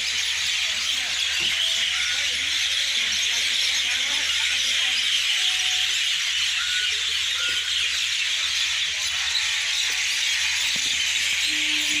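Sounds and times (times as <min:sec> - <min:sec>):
many small birds chirping: 0:00.0 - 0:12.0.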